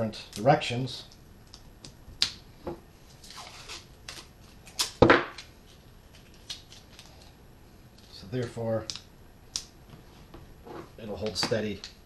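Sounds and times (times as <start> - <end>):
tape ripping: 3.2 - 5.5.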